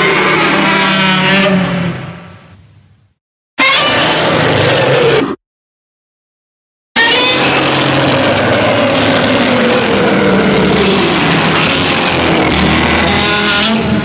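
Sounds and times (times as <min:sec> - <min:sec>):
giant monster roar: 0:00.0 - 0:02.3, 0:03.6 - 0:05.4, 0:07.0 - 0:14.0.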